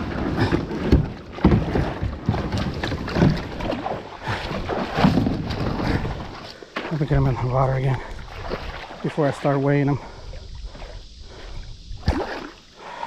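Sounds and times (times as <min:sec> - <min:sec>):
knocks against a kayak: 0:00.1 - 0:03.9, 0:04.8 - 0:06.2.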